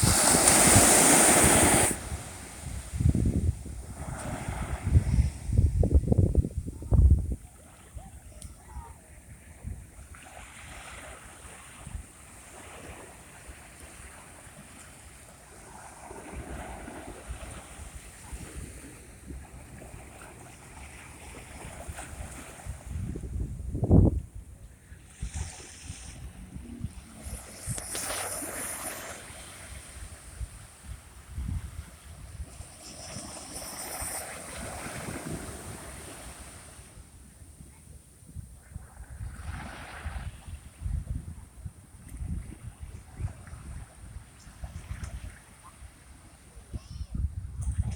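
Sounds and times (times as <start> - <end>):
sea waves washing ashore: 0.0 - 6.0, 7.4 - 24.1, 24.8 - 37.8, 39.0 - 46.9
wind buffeting microphone: 0.0 - 10.0, 21.2 - 45.4, 46.7 - 47.9.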